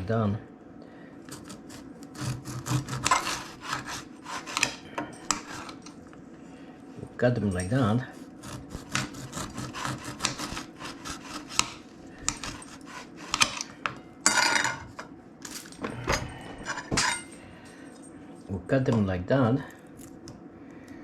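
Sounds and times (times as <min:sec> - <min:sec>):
knife slicing limes: 0:01.3 - 0:05.8, 0:08.2 - 0:13.7
knife scraping stroke: 0:01.3 - 0:06.0, 0:08.1 - 0:13.8.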